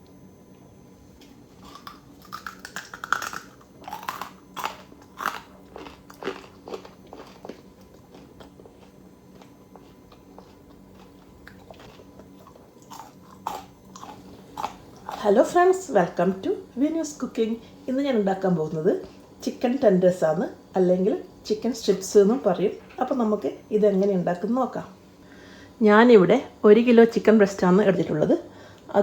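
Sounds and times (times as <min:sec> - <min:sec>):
crunchy chewing of fried chicken: 0:01.6 - 0:15.6.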